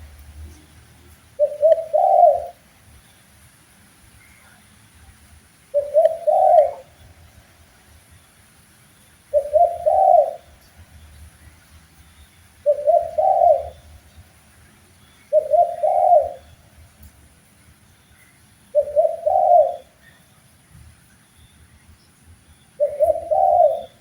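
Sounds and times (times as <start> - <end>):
dove cooing: 1.4 - 2.6, 5.7 - 7.0, 9.3 - 10.6, 12.6 - 14.0, 15.3 - 16.6, 18.7 - 20.2, 22.8 - 24.0.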